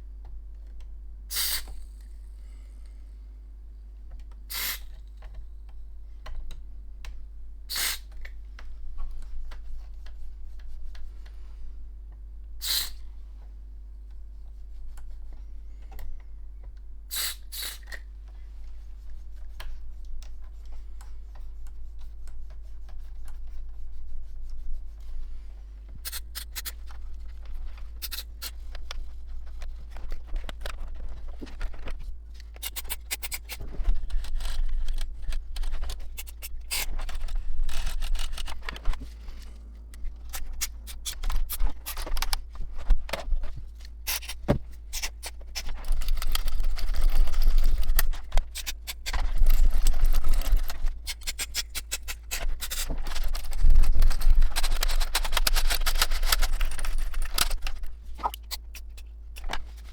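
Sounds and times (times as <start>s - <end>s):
aerosol spray hissing: 12.6s - 13.0s
rapid clicking and scraping: 18.8s - 59.9s.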